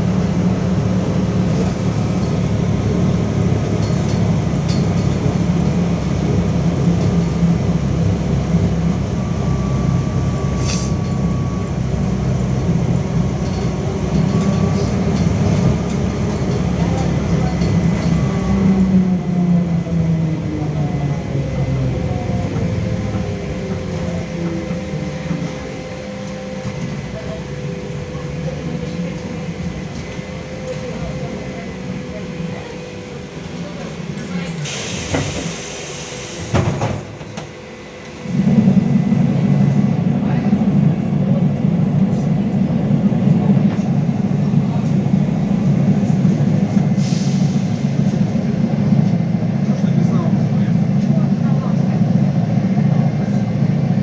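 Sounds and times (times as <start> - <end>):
running rumble: 0.0 - 35.3
trolleybus motor whining: 0.0 - 54.0.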